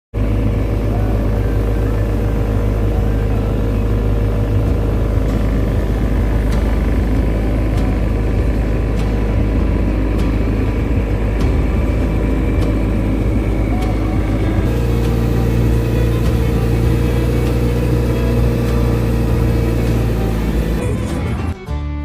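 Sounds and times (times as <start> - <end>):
engine rumbling: 0.1 - 21.7
faint steady hum: 0.2 - 20.8.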